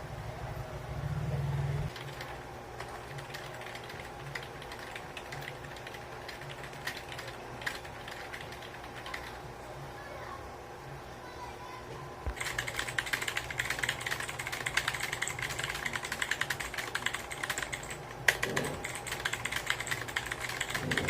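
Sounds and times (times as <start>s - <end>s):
typing on computer keyboard: 1.9s - 9.4s, 12.4s - 21.0s.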